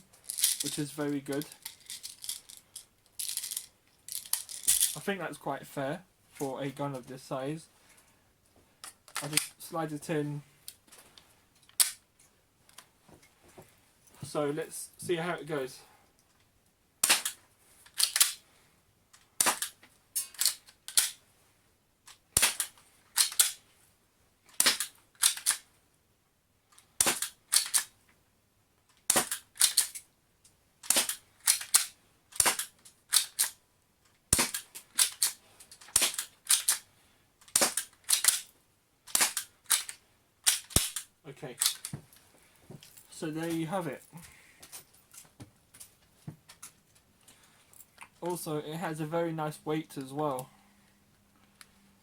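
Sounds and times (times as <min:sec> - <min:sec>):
airsoft pistol slide racking: 0:17.0 - 0:18.4, 0:22.4 - 0:23.6, 0:24.6 - 0:25.6, 0:27.0 - 0:27.9, 0:29.1 - 0:30.0, 0:34.3 - 0:36.9, 0:37.5 - 0:38.5.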